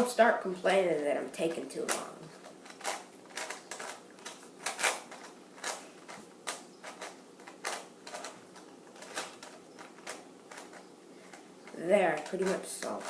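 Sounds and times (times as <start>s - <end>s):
rubik's cube clicking: 2.6s - 8.4s, 9.0s - 11.4s.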